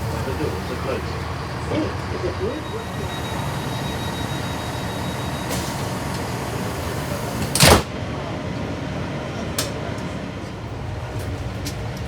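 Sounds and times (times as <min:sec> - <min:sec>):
idling train rumble: 0:00.0 - 0:12.0
pneumatic door air blast: 0:04.8 - 0:07.9.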